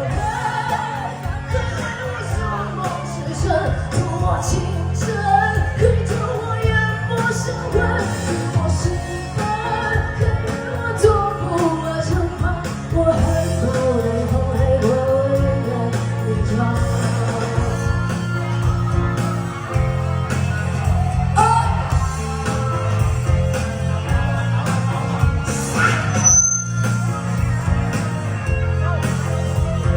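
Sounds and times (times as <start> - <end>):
person singing: 0.0 - 23.5
rock band playing: 0.0 - 29.9.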